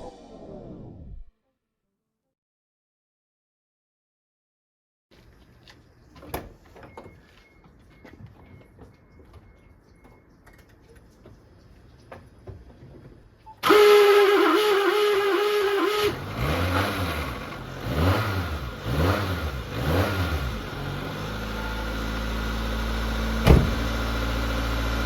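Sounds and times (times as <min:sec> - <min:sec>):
engine starter cranking: 0:13.6 - 0:16.2
engine revving and idling: 0:13.6 - 0:25.0.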